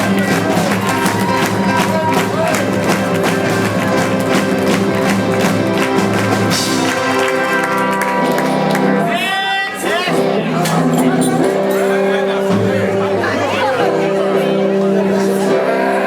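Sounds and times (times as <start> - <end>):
steady drum beat: 0.0 - 9.3, 12.4 - 14.4
live band music: 0.0 - 16.0.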